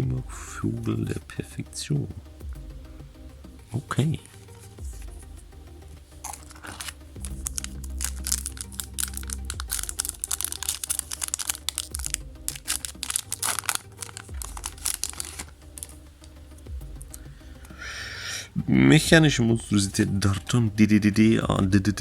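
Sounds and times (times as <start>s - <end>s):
foil wrapper crinkling: 6.2s - 16.4s.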